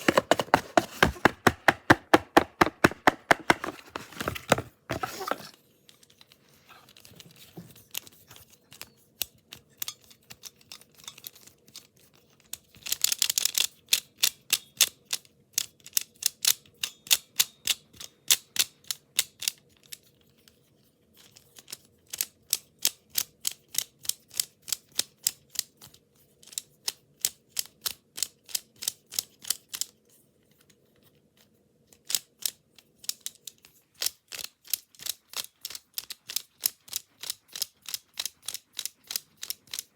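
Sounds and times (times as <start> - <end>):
puzzle cube layers clicking: 0.0 - 5.2.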